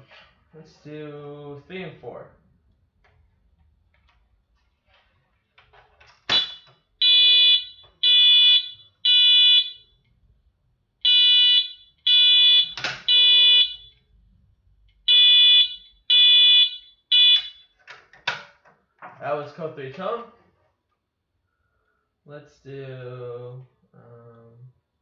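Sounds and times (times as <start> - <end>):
fire alarm horn blasts: 6.3 - 10.0, 11.0 - 14.0, 15.1 - 17.8.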